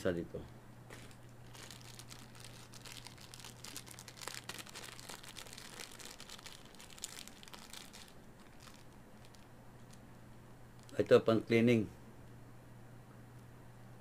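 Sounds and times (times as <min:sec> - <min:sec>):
packaging crinkling: 0:00.9 - 0:10.0, 0:10.8 - 0:11.0.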